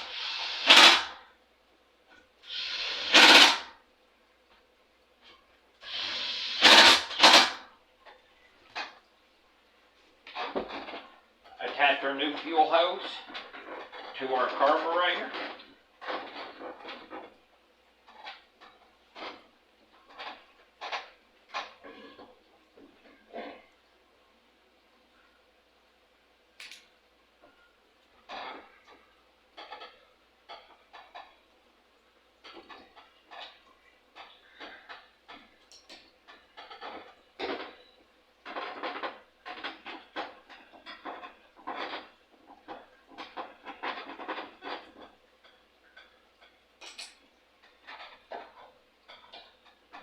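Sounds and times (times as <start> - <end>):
small metal parts clinking: 46.8 - 48.2
metal parts clattering: 46.8 - 50.0.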